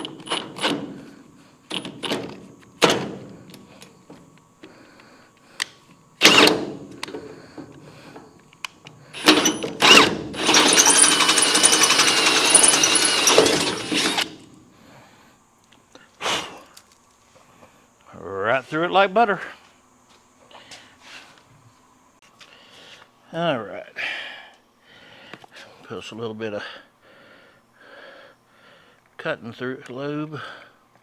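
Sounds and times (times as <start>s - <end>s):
power drill boring metal: 0.0s - 0.8s, 6.2s - 6.6s, 9.2s - 14.4s
tools clicking and knocking: 1.7s - 2.4s.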